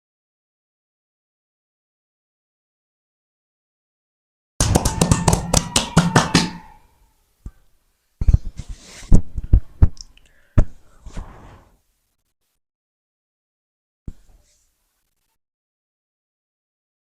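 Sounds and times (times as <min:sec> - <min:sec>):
heavy thumps and knocks: 0:04.6 - 0:06.8
sharp hand slaps: 0:04.6 - 0:06.8.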